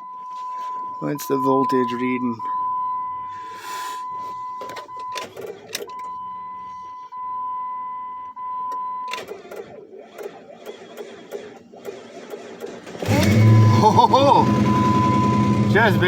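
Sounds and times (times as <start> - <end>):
high electronic warning tone: 13.1 - 16.0.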